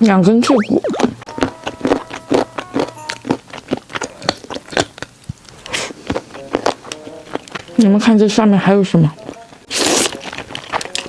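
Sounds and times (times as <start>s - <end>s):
chewing crunchy cartilage: 0.8s - 8.2s, 8.9s - 11.0s.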